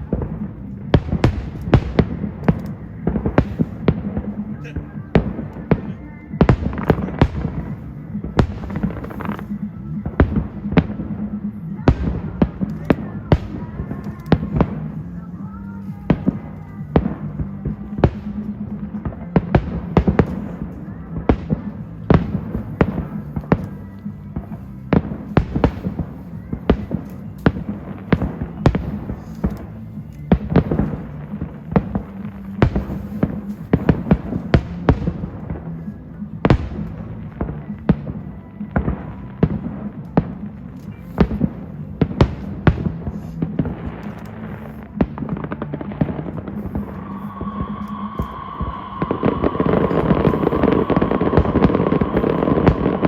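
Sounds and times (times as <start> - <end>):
fireworks bangs: 0.0 - 53.0.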